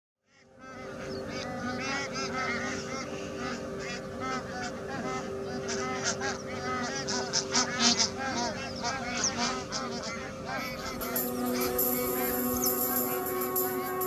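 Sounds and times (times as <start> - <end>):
waterbirds honking: 0.3 - 14.0
steady hum: 0.5 - 14.0.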